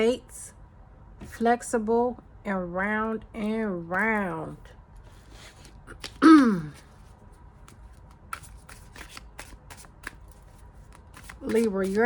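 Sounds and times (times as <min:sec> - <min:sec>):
cards being shuffled: 0:05.0 - 0:12.0.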